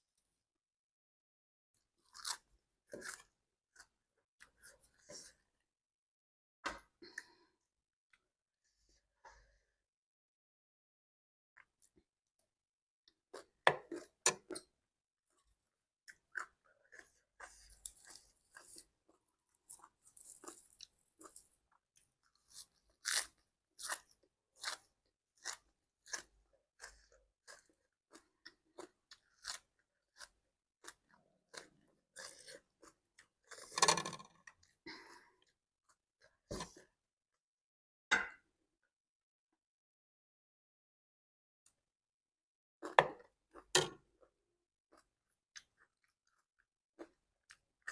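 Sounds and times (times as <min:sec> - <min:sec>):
person chewing crunchy food: 0:02.0 - 0:05.3, 0:16.0 - 0:36.9, 0:44.9 - 0:47.9.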